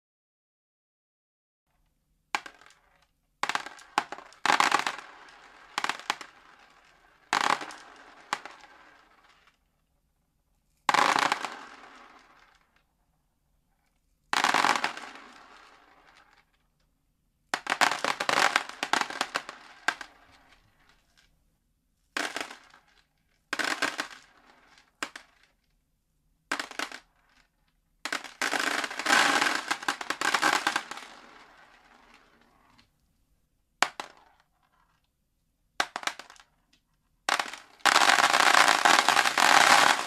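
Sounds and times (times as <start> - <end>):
dried beans rattling: 37.9 - 40.0.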